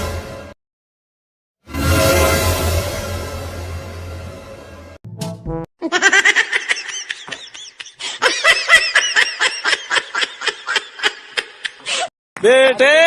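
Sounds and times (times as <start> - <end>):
high-pitched giggling: 5.8 - 12.0.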